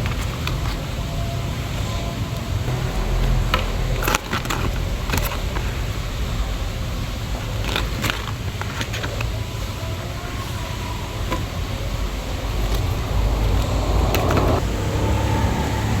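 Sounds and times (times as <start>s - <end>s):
steady low rumble: 2.6s - 7.7s, 11.5s - 16.0s.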